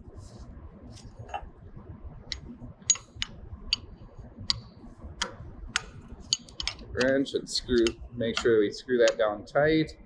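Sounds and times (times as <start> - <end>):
wrench clicking on metal: 2.3 - 3.9, 5.2 - 9.3.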